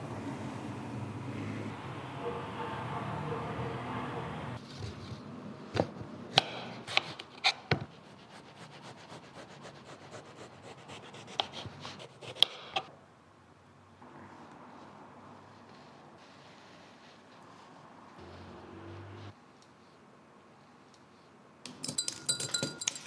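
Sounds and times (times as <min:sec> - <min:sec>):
utensils and cups clacking: 0:21.7 - 0:23.0.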